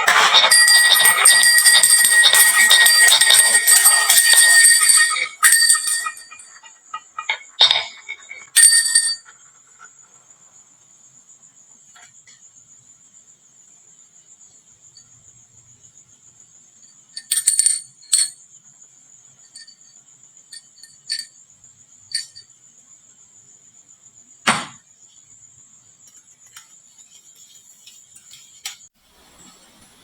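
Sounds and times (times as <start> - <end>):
bell-like ringing: 0.0 - 6.6
marbles clattering down wooden run: 0.0 - 9.2.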